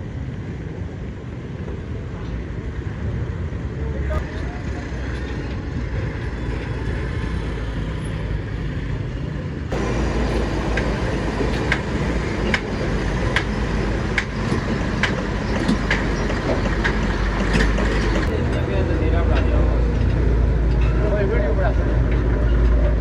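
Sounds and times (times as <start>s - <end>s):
low vehicle rumble: 0.7s - 23.0s.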